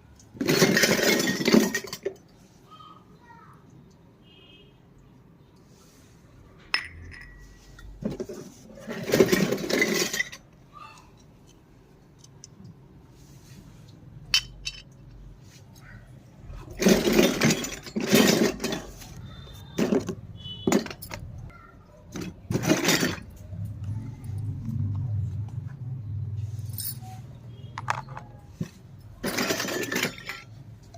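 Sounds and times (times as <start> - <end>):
toy kitchen pieces clinking: 0.3 - 2.2, 6.8 - 10.5, 14.4 - 15.0, 16.7 - 21.3, 22.1 - 23.4, 29.1 - 30.9.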